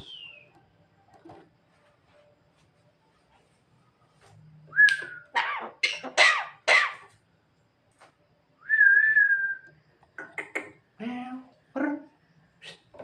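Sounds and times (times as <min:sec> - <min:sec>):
bird whistling: 0:00.0 - 0:00.5
harsh raspy bird calls: 0:05.3 - 0:07.1.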